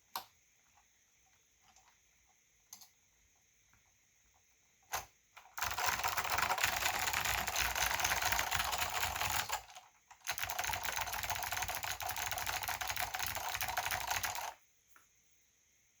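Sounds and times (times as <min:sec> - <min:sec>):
fast keyboard typing clicks: 0:05.0 - 0:14.6.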